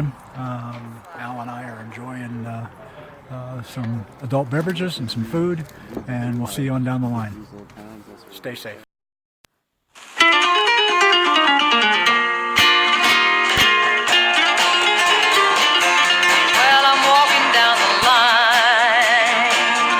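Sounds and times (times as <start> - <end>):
plucked guitar music: 10.2 - 19.9.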